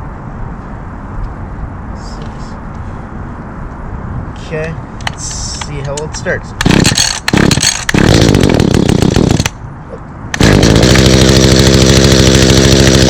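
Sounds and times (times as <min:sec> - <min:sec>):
hedge trimmer engine running: 0:06.6 - 0:09.6, 0:10.4 - 0:13.0.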